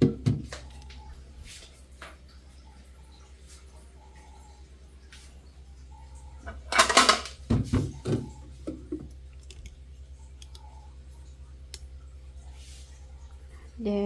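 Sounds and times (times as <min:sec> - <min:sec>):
bottles clattering in refrigerator: 0:00.0 - 0:01.0, 0:06.4 - 0:09.2.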